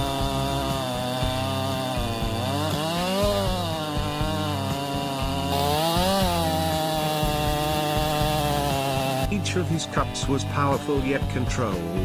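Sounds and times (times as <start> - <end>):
chainsaw running: 0.0 - 12.0.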